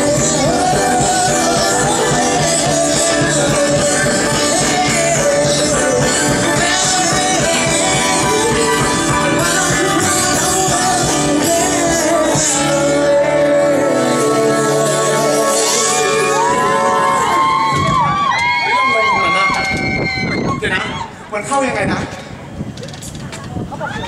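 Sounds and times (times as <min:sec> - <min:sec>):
live rock band playing: 0:00.0 - 0:17.7
lead singer singing: 0:00.0 - 0:18.2.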